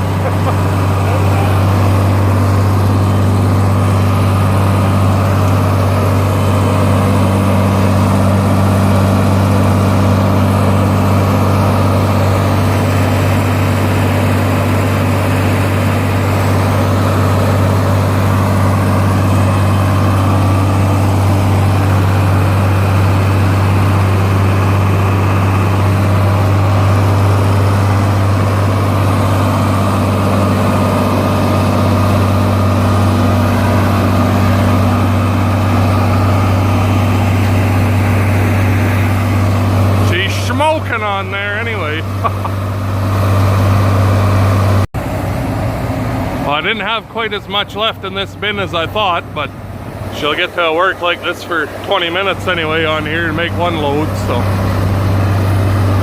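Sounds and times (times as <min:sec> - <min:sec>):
tractor engine running under load: 0:00.0 - 0:56.0.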